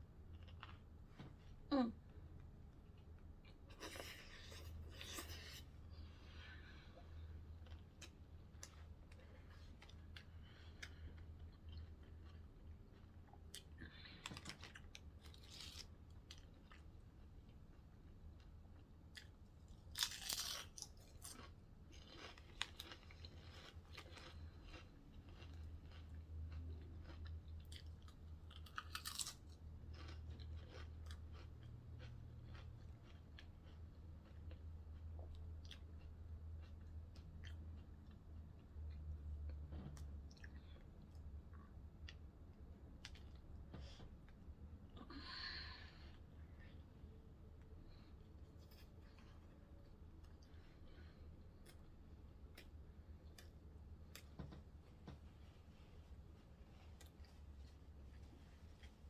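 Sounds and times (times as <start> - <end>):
steady low hum: 0.0 - 59.0
chewing sandwich: 0.2 - 1.6, 2.3 - 44.6.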